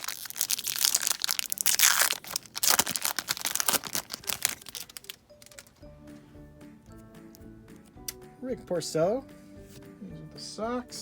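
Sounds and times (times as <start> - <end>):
wrapper tearing and crinkling: 0.0 - 5.8.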